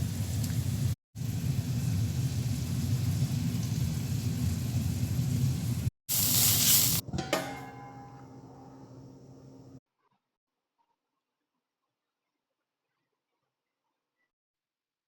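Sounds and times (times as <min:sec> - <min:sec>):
food sizzling in a pan: 0:00.0 - 0:07.1.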